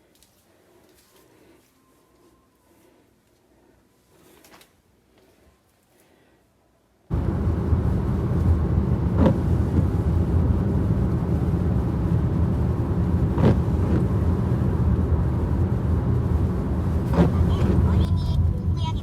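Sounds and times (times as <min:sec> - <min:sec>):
car driving rumble: 0:07.1 - 0:19.0.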